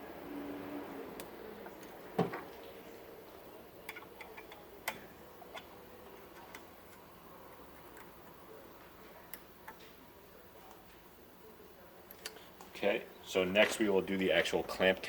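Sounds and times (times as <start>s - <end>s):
light clicks and taps of parts: 3.8s - 8.4s.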